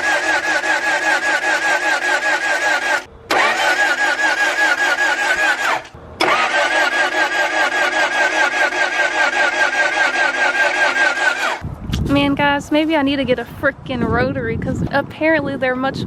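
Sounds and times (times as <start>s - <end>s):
car engine cranking: 0.0s - 11.6s.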